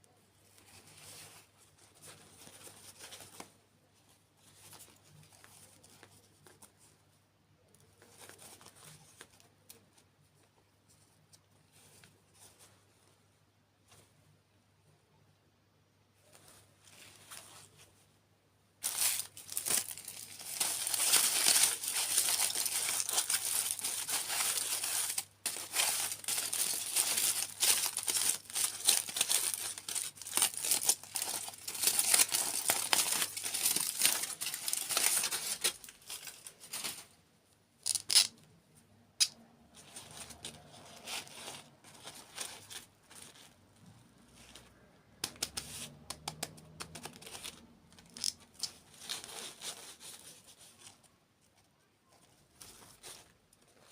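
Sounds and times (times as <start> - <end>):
packaging crinkling and tearing: 18.8 - 37.1, 37.8 - 38.4, 45.3 - 50.7.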